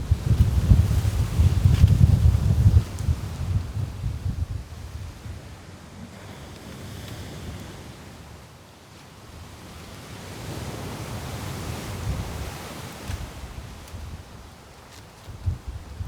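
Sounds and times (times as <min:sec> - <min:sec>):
wind buffeting the microphone: 0:00.0 - 0:08.4, 0:10.2 - 0:16.0
ocean surf breaking: 0:05.3 - 0:08.5.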